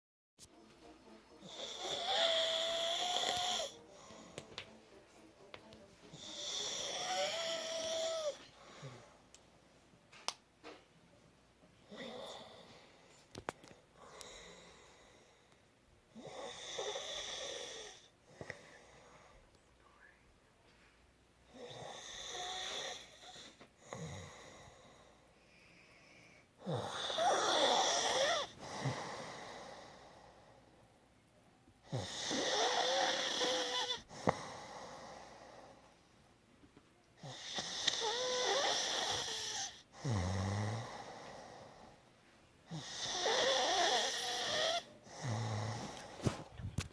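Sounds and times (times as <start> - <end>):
quiet breathing: 1.3 - 10.0, 11.7 - 31.0, 31.8 - 36.4, 37.1 - 46.9
woman snoring: 1.4 - 4.4, 6.1 - 9.1, 11.9 - 12.8, 16.2 - 18.5, 21.5 - 24.8, 26.6 - 30.2, 31.9 - 35.8, 37.2 - 42.0, 42.7 - 46.4.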